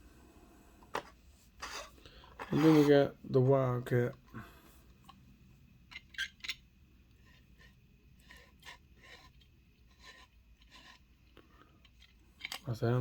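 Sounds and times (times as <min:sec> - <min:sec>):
toy truck handling rubs and clicks: 0:00.8 - 0:03.0, 0:05.9 - 0:12.7.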